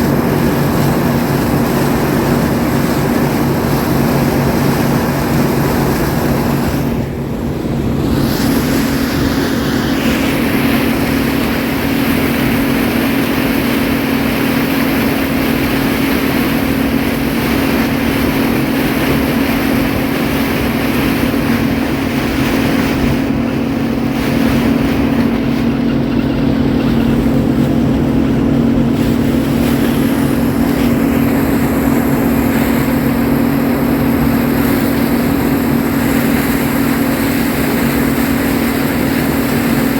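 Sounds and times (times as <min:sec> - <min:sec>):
farm machinery engine droning: 0:00.0 - 0:39.9.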